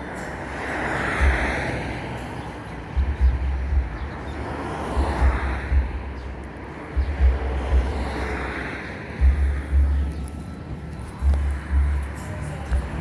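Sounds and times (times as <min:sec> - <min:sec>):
steady outdoor rush: 0:00.0 - 0:13.0
wind buffeting microphone: 0:01.1 - 0:13.0
deep thumps: 0:03.0 - 0:04.1, 0:05.0 - 0:06.2, 0:07.0 - 0:08.1, 0:09.2 - 0:10.1.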